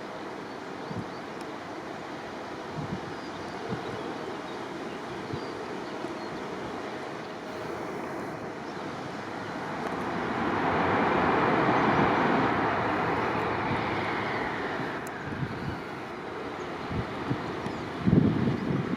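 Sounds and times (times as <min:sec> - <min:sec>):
jet airliner passing: 0:06.4 - 0:18.9.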